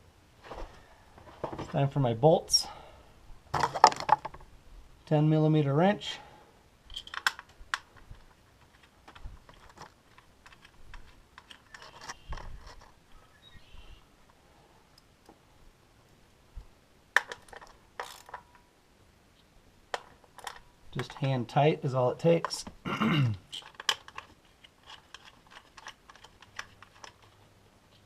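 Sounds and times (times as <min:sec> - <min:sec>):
wrench and bolts clicking: 0:06.9 - 0:07.8, 0:17.2 - 0:18.4.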